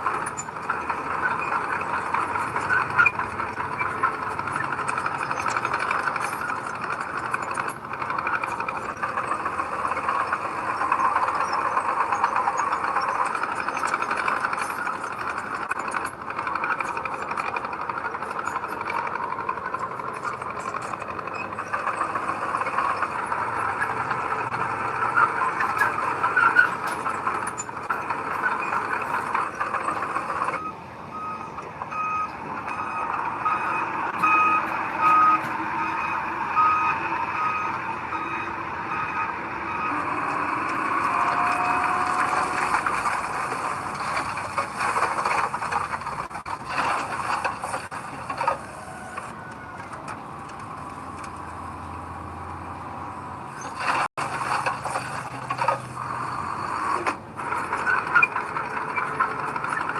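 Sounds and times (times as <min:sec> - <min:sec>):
reversing alarm beeping: 0:00.0 - 0:44.0
heavy earthmoving machinery running: 0:00.0 - 0:59.9.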